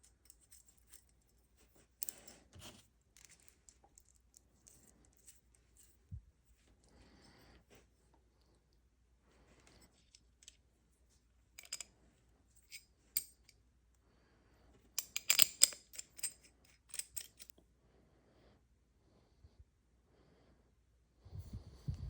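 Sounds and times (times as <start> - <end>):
metal stove parts clicking and clinking: 11.6 - 11.9, 15.0 - 17.5.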